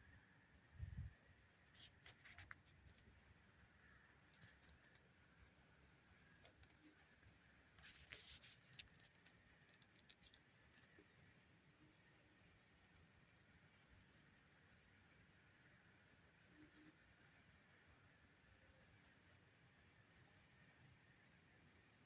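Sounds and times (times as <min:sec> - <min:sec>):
cricket trill: 0:00.0 - 0:22.0.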